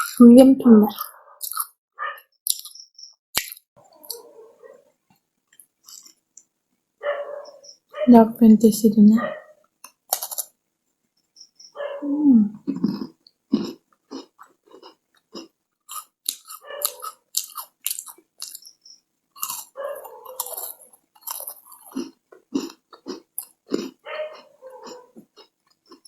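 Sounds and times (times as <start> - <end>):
person chewing crunchy cookie: 0.0 - 0.2, 0.9 - 1.8, 2.4 - 2.8, 3.4 - 4.4, 5.6 - 6.2, 9.8 - 10.6, 12.0 - 18.8, 19.4 - 26.0.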